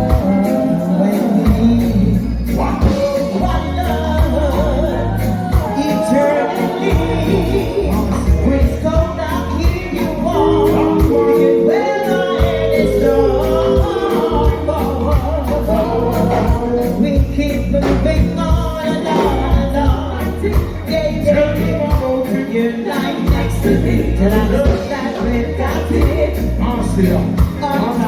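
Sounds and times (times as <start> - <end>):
steady bass beat: 0.0 - 22.3
music with singing: 0.0 - 28.0.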